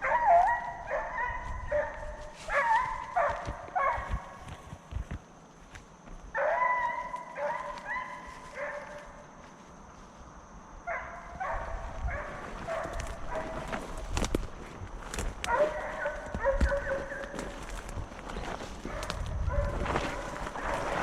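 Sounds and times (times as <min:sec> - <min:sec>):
hounds baying: 0:00.0 - 0:04.4, 0:06.4 - 0:09.2, 0:15.5 - 0:17.7.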